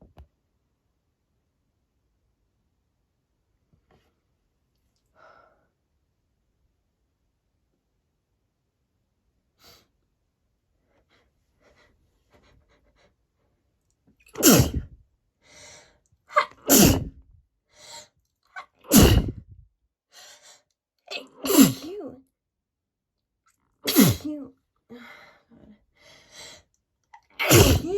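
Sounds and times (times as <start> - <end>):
woman sneezing: 14.4 - 15.0, 16.4 - 17.2, 18.9 - 19.5, 21.2 - 22.2, 23.9 - 24.5, 27.4 - 27.9
quick breaths drawn in: 14.4 - 16.0, 16.6 - 18.2, 19.0 - 19.6, 26.0 - 26.7.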